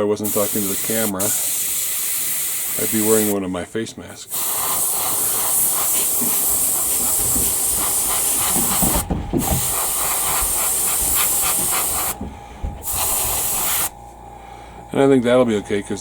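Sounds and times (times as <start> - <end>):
airbrush spraying hiss: 0.0 - 3.4, 4.3 - 12.2, 12.8 - 14.0.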